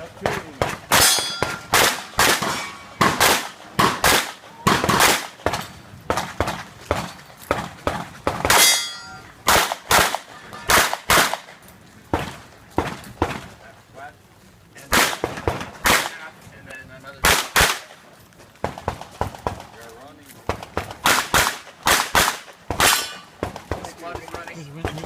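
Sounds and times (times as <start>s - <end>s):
steel targets clanging: 0.9s - 3.2s, 8.5s - 9.4s.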